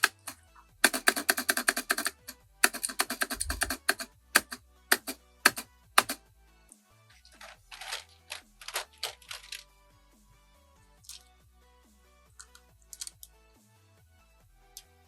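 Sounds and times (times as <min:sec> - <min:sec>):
mechanical keyboard typing: 0:00.0 - 0:06.2.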